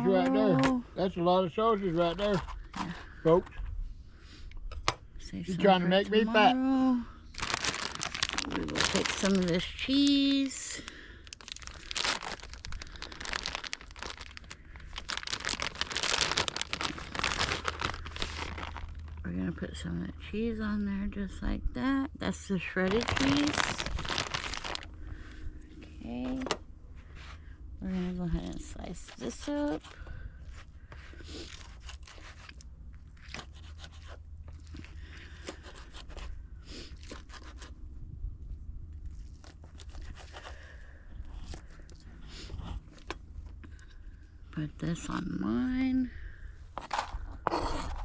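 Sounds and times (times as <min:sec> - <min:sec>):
plastic bag crinkling: 0:07.3 - 0:19.3, 0:22.6 - 0:24.9.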